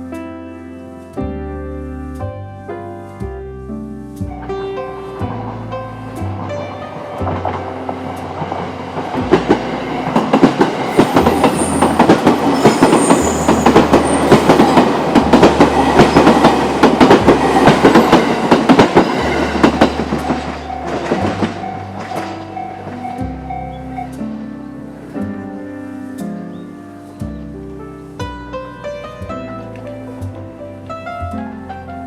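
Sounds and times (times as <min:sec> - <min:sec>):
train wheels clacking over rail joints: 0:05.2 - 0:23.6.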